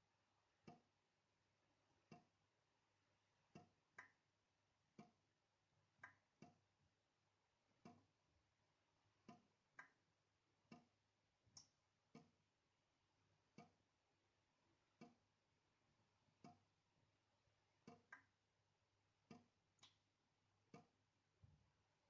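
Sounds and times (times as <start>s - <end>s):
water dripping from tap: 6.0s - 6.6s, 11.5s - 12.4s, 17.8s - 18.4s, 19.2s - 20.1s, 20.7s - 21.0s.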